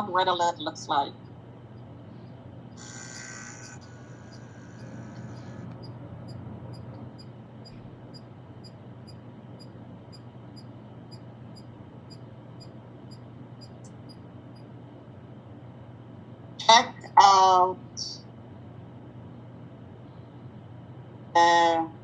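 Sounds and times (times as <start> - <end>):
low steady hum: 0.0 - 22.0
high-pitched electronic ticks: 2.7 - 14.2.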